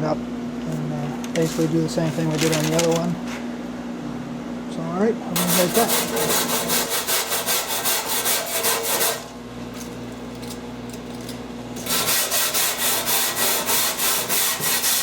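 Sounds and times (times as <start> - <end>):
scrubbing strokes on panel: 5.4 - 9.3, 11.8 - 15.0.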